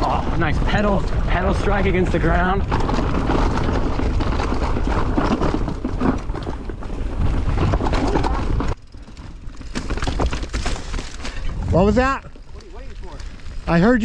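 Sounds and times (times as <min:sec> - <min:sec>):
wind on microphone: 0:00.0 - 0:08.8
bike rattling: 0:00.0 - 0:14.0
bike tyres rolling on rough trail: 0:00.0 - 0:14.0
knocks from rocks and roots: 0:02.7 - 0:11.6.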